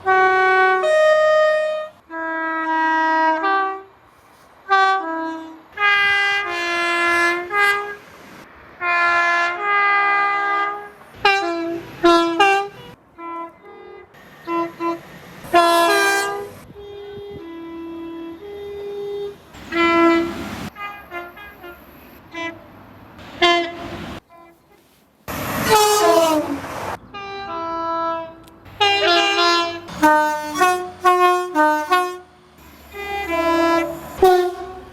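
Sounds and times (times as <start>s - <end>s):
passing train horn falling in pitch: 0.0s - 8.0s, 8.8s - 22.7s, 23.3s - 24.5s, 25.6s - 34.9s
train horns sounding chords: 0.0s - 8.1s, 8.8s - 24.6s, 25.6s - 34.9s.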